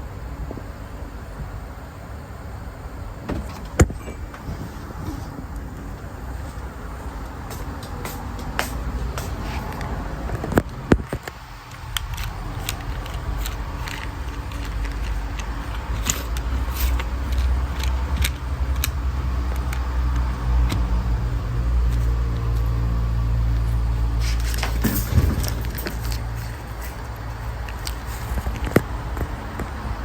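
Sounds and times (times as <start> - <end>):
car engine idling: 2.4 - 30.0
sharp clicks: 9.7 - 20.9.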